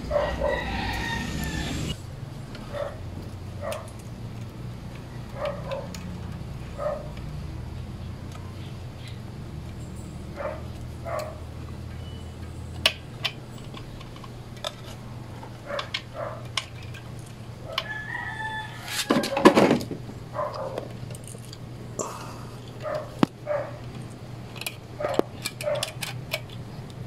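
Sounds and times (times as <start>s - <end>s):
loud animal call: 0.0s - 2.0s.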